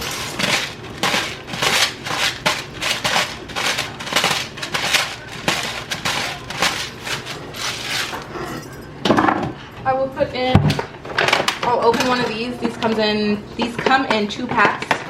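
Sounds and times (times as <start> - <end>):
plastic packaging crinkling: 0.0 - 8.3.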